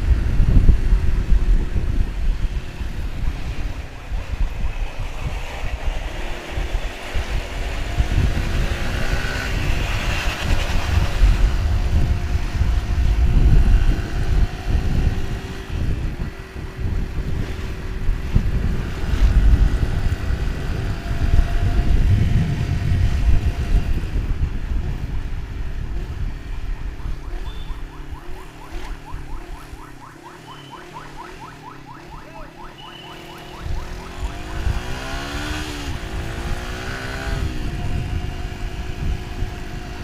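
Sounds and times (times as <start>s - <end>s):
motorcycle engine: 0.0s - 40.0s
wind buffeting microphone: 0.0s - 40.0s.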